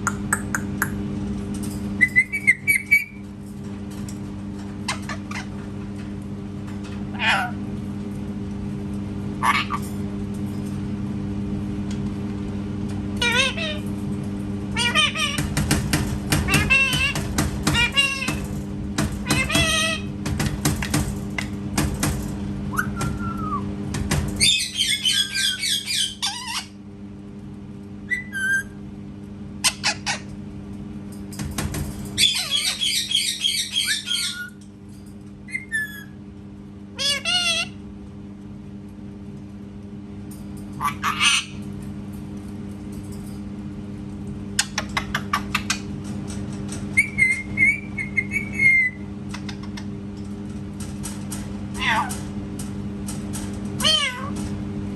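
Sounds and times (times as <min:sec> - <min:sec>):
steady low hum: 0:00.0 - 0:54.9
parrot warbling and squawking: 0:07.1 - 0:07.6, 0:09.4 - 0:09.8, 0:13.2 - 0:13.9, 0:14.8 - 0:18.5, 0:19.2 - 0:20.1, 0:24.4 - 0:26.8, 0:28.1 - 0:28.8, 0:32.2 - 0:34.6, 0:37.0 - 0:37.8, 0:40.8 - 0:41.6, 0:47.0 - 0:49.0, 0:51.8 - 0:52.2, 0:53.8 - 0:54.4.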